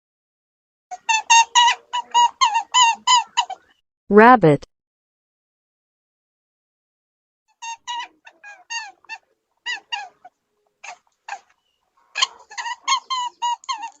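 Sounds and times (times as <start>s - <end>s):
small animal high-pitched calls: 0.9s - 3.7s, 7.5s - 14.0s.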